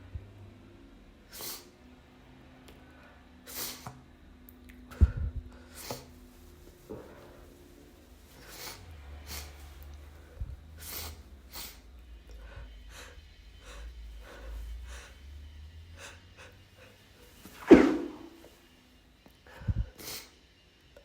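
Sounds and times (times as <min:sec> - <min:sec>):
stifled sneeze: 0:01.3 - 0:01.8, 0:03.5 - 0:04.0, 0:08.4 - 0:09.6, 0:10.8 - 0:11.9, 0:16.8 - 0:18.4, 0:20.0 - 0:20.4.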